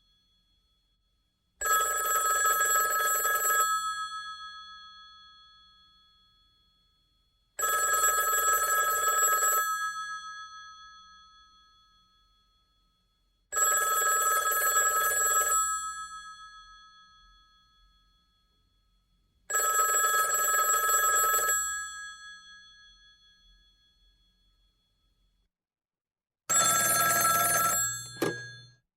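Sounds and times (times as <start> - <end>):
old telephone bell ringing: 1.6 - 3.8, 7.6 - 9.6, 13.6 - 15.8, 19.5 - 22.0, 26.5 - 28.7.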